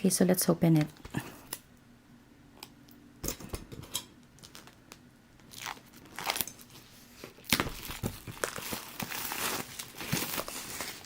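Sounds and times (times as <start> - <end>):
packaging crinkling and tearing: 4.4 - 11.0.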